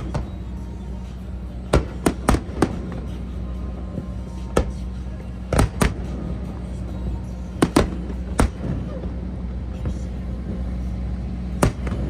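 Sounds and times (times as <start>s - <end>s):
fireworks bangs: 1.7s - 3.1s, 5.5s - 6.2s, 7.6s - 9.0s, 11.6s - 12.0s.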